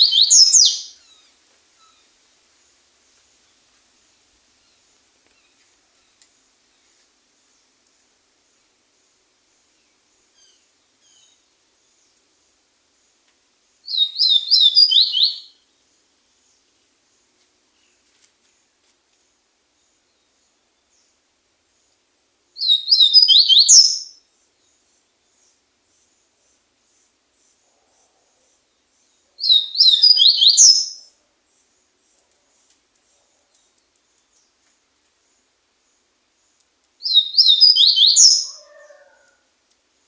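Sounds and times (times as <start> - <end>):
bird singing whistled notes: 0.0 - 2.1, 13.8 - 15.7, 22.6 - 24.2, 29.4 - 31.1, 37.0 - 39.3.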